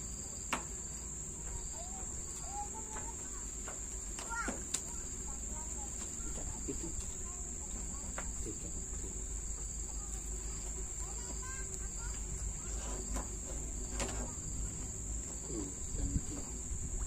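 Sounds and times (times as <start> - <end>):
insects chirring: 0.0 - 17.0
wind rumble on microphone: 15.7 - 17.0.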